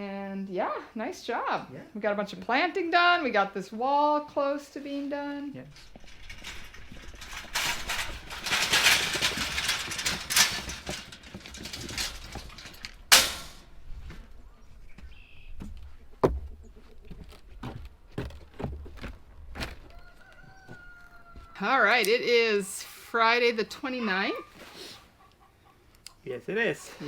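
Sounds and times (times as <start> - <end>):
rustling and handling noise: 5.5 - 14.8.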